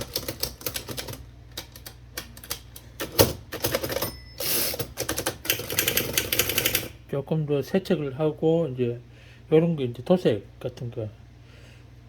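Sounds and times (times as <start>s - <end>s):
typewriter keys clacking: 0.0s - 6.9s.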